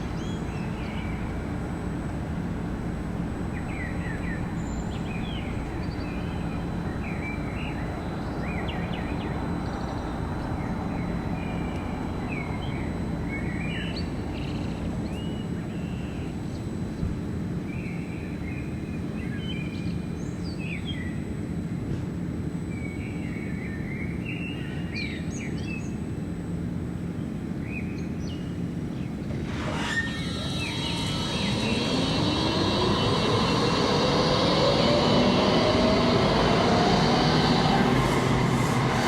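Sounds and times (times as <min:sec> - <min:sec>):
steady low hum: 0:00.0 - 0:39.0.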